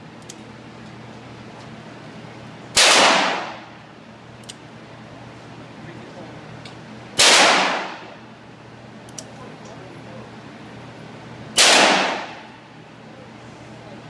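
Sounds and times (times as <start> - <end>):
gunshots with echo: 2.8 - 3.6, 7.2 - 8.1, 11.6 - 12.5.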